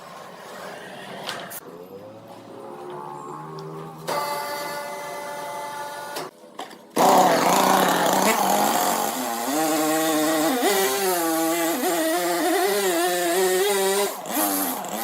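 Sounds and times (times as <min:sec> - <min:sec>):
power saw cutting wood: 0:03.9 - 0:06.3, 0:07.0 - 0:15.0.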